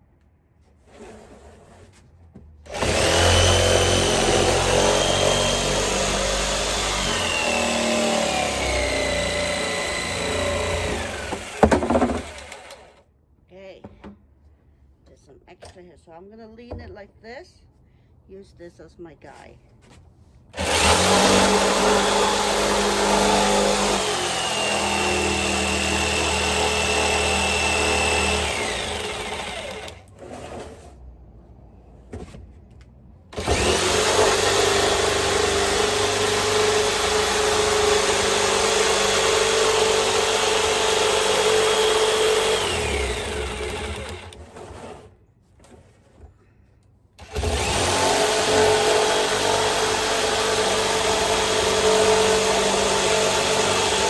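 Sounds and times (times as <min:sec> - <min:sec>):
jigsaw cutting metal barrel: 0:02.7 - 0:13.0, 0:20.6 - 0:30.8, 0:33.4 - 0:45.2, 0:47.2 - 0:54.0.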